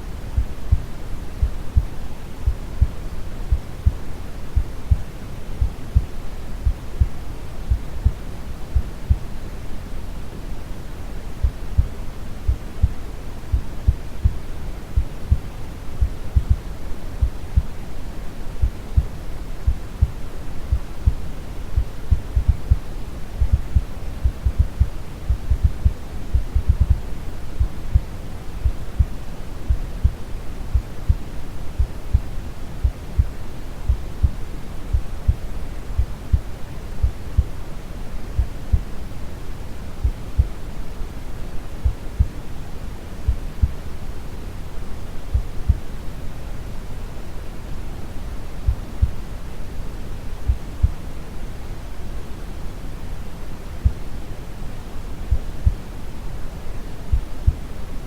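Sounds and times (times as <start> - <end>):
brown noise hiss: 0.0 - 58.0
heartbeat thumping: 0.4 - 4.0, 4.6 - 8.2, 8.8 - 9.3, 11.4 - 14.4, 15.0 - 17.8, 18.6 - 31.2, 31.8 - 35.4, 36.0 - 37.6, 38.4 - 38.9, 40.0 - 40.6, 41.8 - 42.3, 43.3 - 43.8, 49.0 - 49.2, 55.3 - 55.8, 57.1 - 57.7.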